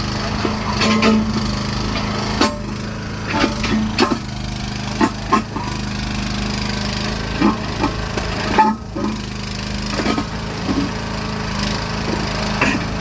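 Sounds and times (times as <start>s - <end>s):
backhoe engine running: 0.0s - 13.0s
machine knocks and clatters: 0.3s - 5.9s.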